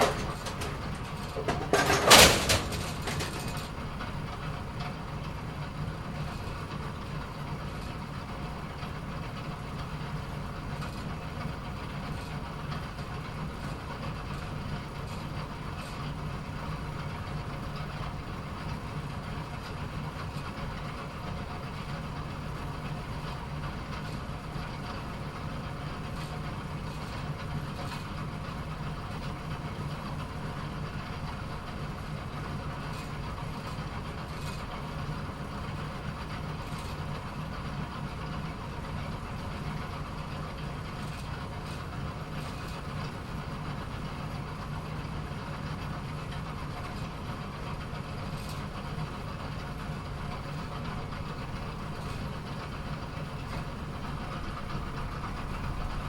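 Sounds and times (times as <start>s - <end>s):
light mechanical clicks and knocks: 0.0s - 5.0s
pinsetter machine humming: 0.0s - 29.8s.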